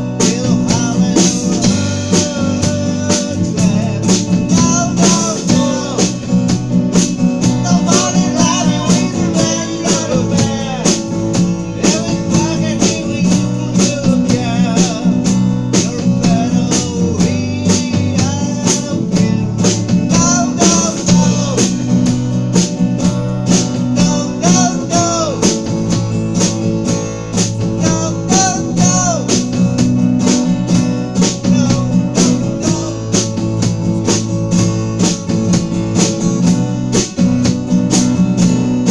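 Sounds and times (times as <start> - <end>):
bass guitar: 0.0 - 38.9
drum kit beat: 0.0 - 38.9
electric guitar: 0.0 - 38.9.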